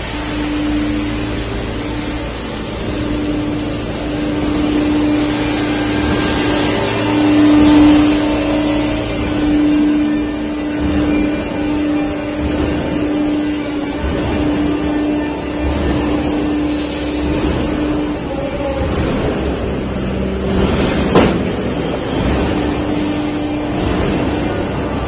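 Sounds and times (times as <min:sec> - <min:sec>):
hydraulic pump whine: 0:00.0 - 0:25.0
machine noise: 0:00.0 - 0:25.0.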